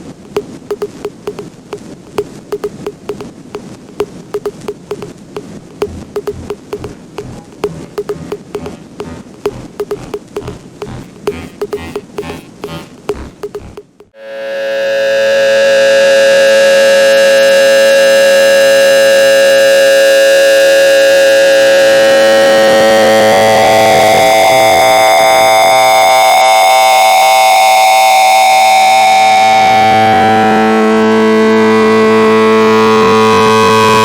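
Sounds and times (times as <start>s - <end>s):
harsh electronic tone: 5.8s - 15.9s.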